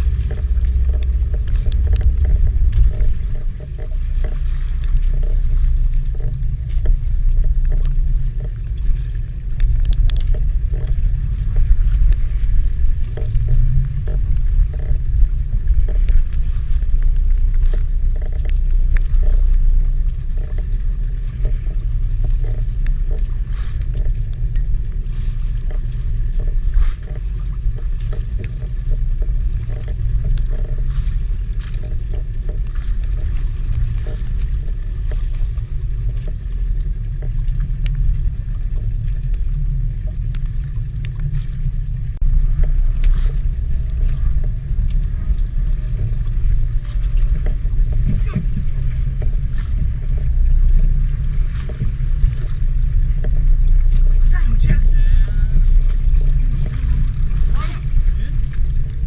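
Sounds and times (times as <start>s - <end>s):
light clicks and knocks: 0.0s - 12.2s
boat engine low rumble: 0.0s - 59.0s.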